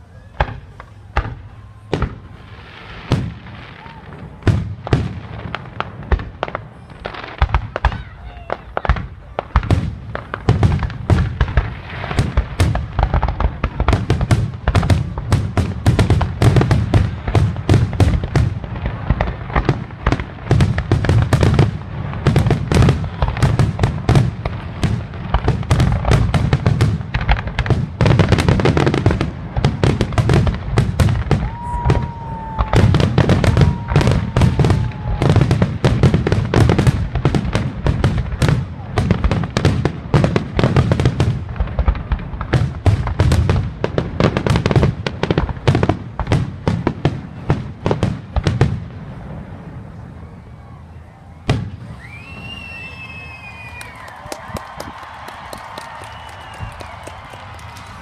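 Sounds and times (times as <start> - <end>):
firework whistle: 0.0 - 5.1, 31.0 - 36.8, 49.9 - 58.0
fireworks bangs and crackles: 0.0 - 58.0.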